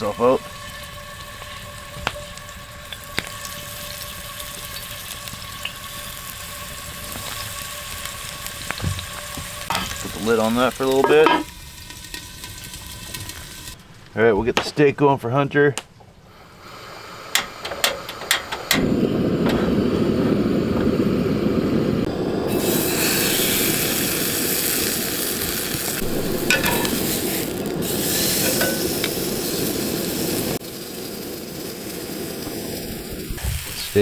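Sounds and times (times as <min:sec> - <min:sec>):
steak sizzling in a frying pan: 0:00.0 - 0:13.8, 0:16.6 - 0:34.0.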